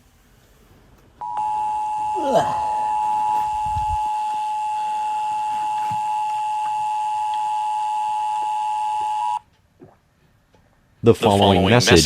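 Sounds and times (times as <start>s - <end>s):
steady two-tone alarm: 1.2s - 9.4s.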